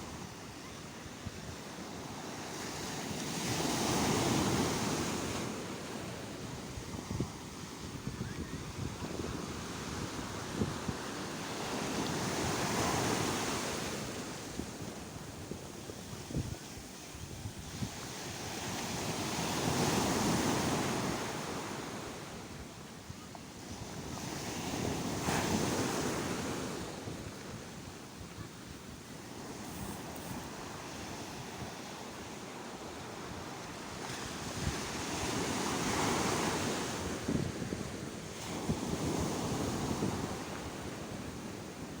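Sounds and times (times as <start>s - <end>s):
sea waves breaking ashore: 24.0s - 42.0s.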